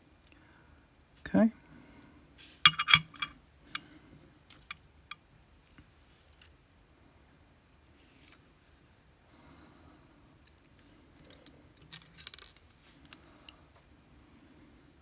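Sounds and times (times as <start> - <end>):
metal lock parts clicking: 2.7 - 3.3.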